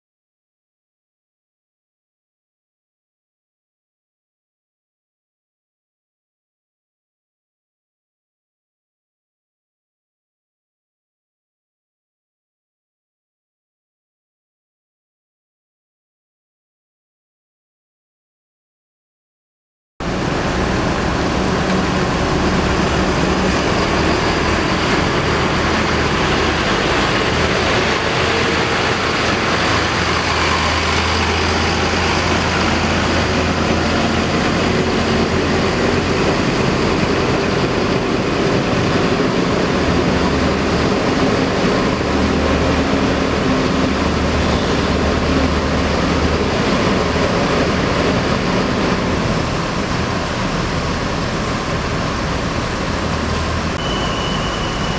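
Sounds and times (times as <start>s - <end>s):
diesel bus engine droning: 20.0s - 54.9s.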